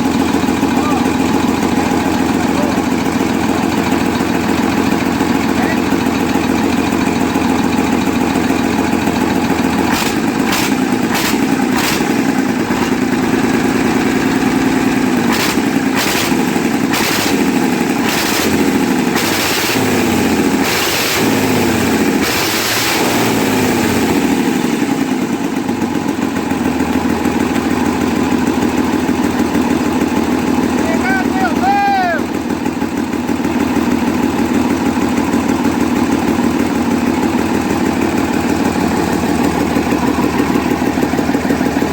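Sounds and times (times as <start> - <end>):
diesel engine idling and revving: 0.0 - 41.9.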